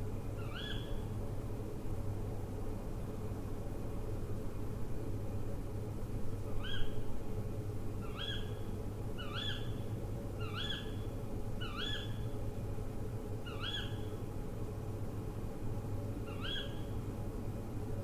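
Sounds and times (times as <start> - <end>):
low background hum: 0.0 - 18.0
owl calling: 0.4 - 1.0, 8.0 - 8.5, 10.4 - 11.0, 11.6 - 12.2, 13.5 - 14.1, 16.3 - 16.9.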